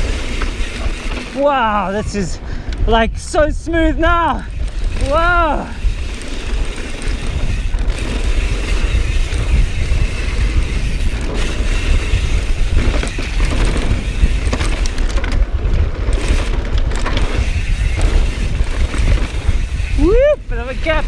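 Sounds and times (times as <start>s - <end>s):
bike clicks and knocks: 0.0s - 1.4s, 5.8s - 20.0s
tyres rushing on dirt: 0.0s - 2.8s, 4.3s - 21.0s
wind rumbling on microphone: 0.0s - 21.0s.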